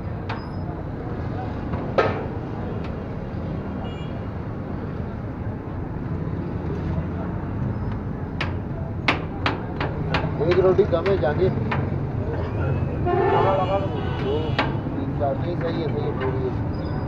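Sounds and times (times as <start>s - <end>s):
traffic rumble: 0.0s - 17.0s
sharp knocks: 8.4s - 12.0s.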